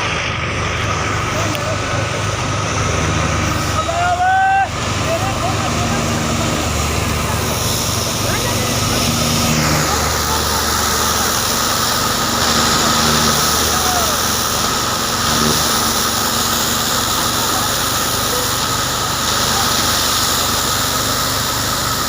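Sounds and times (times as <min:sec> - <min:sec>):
farm machine engine running: 0:00.0 - 0:22.0.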